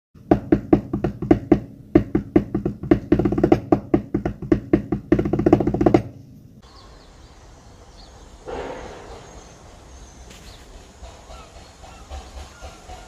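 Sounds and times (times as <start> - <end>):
drum strikes in quick rhythm: 0.2 - 6.1
faint outdoor background noise: 0.2 - 13.0.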